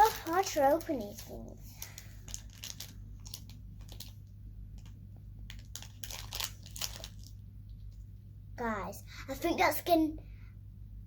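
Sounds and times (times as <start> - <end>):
plastic wrapper crinkling: 0.0 - 7.5.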